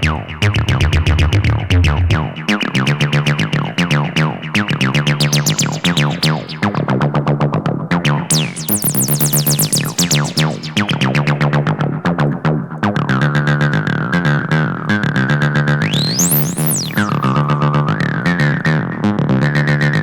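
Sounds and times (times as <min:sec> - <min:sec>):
distorted acid synth bassline: 0:05.1 - 0:06.7, 0:08.2 - 0:11.4, 0:15.8 - 0:17.5.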